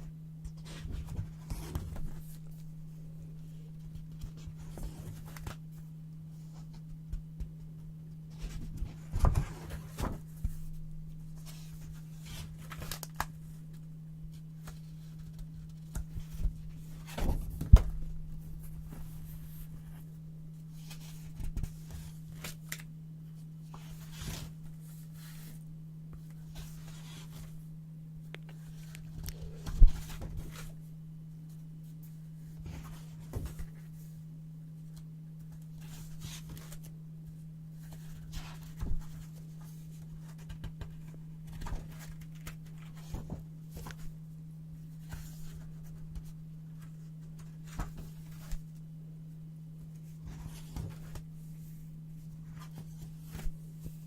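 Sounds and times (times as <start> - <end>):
steady low hum: 0.0 - 54.0
paper rustling and crinkling: 8.3 - 10.8, 11.4 - 13.8, 37.8 - 44.2.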